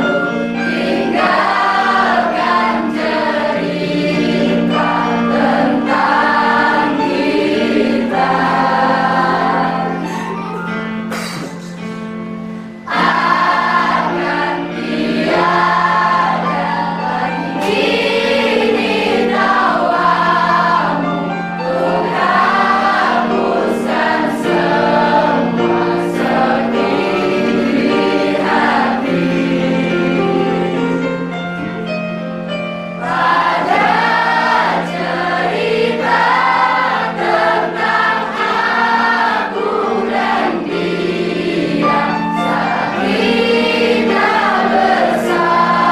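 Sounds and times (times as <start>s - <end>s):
students singing in chorus: 0.0s - 10.4s, 12.5s - 31.4s, 33.0s - 45.9s.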